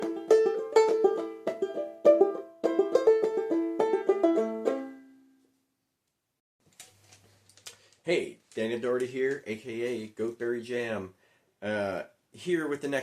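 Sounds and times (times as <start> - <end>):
banjolele plucked tune: 0.0 - 5.3.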